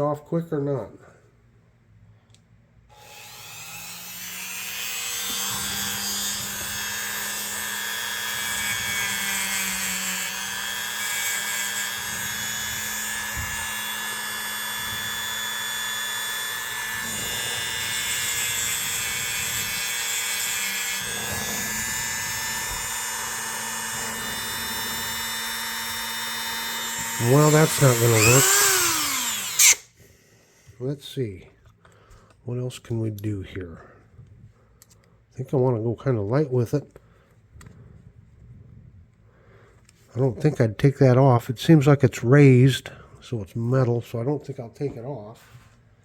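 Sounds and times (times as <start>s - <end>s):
rotary tool whining on metal: 2.9s - 29.9s.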